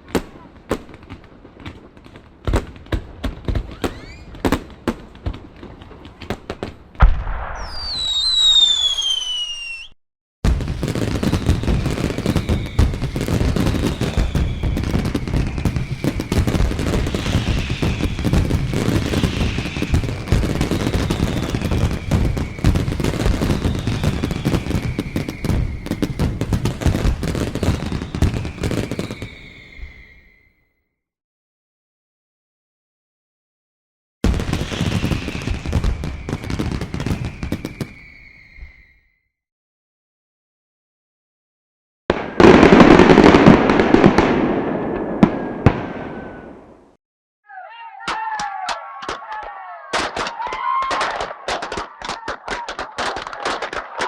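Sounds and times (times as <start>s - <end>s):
firework cracks and bangs: 0.0s - 30.4s, 34.2s - 38.9s, 42.1s - 46.9s, 48.1s - 54.0s
firework falling whistle: 3.7s - 4.5s, 7.0s - 30.8s, 34.3s - 39.4s, 45.2s - 46.6s, 47.6s - 54.0s
firework crackling: 3.7s - 9.9s, 10.5s - 30.4s, 34.3s - 38.8s, 49.1s - 54.0s.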